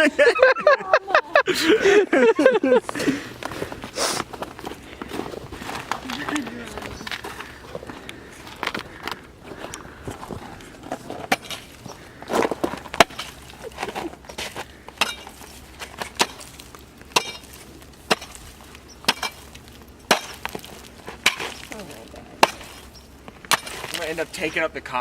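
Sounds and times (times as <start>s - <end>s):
pickaxe striking ice: 14.4s - 16.5s, 17.1s - 18.4s, 19.1s - 19.5s, 20.1s - 20.6s, 21.2s - 21.7s, 22.4s - 22.9s, 23.5s - 24.5s.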